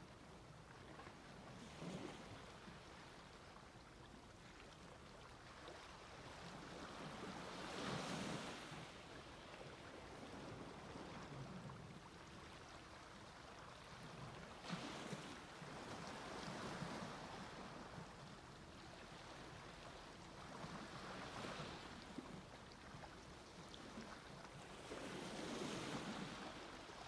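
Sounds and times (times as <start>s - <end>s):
small waves washing onto beach: 5.6s - 27.0s.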